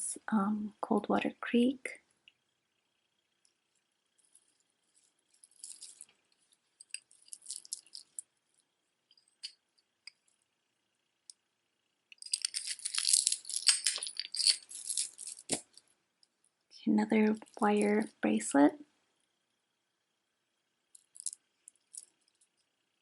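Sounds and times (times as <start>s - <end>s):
beaded jewelry clicking and clinking: 4.2s - 10.4s, 12.1s - 16.3s, 17.3s - 17.7s, 20.9s - 22.7s.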